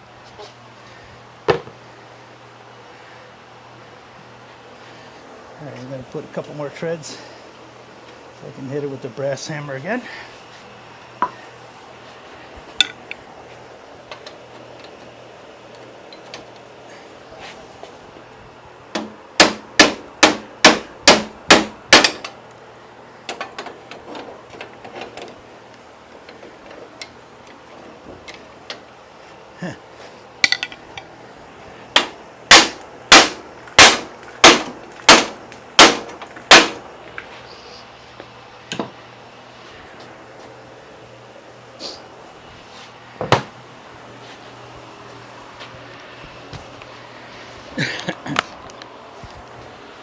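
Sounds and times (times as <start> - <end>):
hammer striking metal: 19.0 - 22.3, 32.0 - 36.8.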